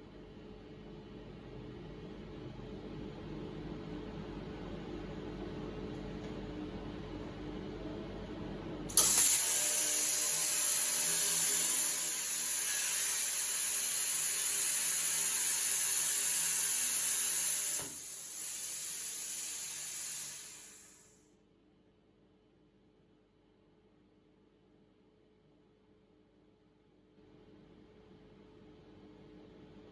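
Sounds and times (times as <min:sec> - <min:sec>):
plasma torch hissing: 0:08.9 - 0:21.1.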